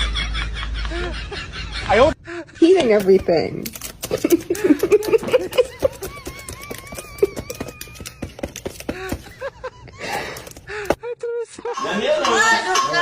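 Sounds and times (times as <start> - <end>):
parrot clicking: 3.0 - 9.4.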